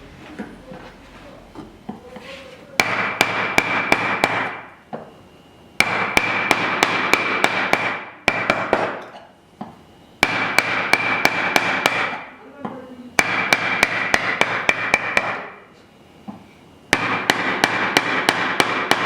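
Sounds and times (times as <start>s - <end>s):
mallet striking chisel: 2.8s - 4.6s, 5.8s - 9.2s, 10.2s - 12.3s, 13.2s - 15.5s, 16.9s - 19.0s.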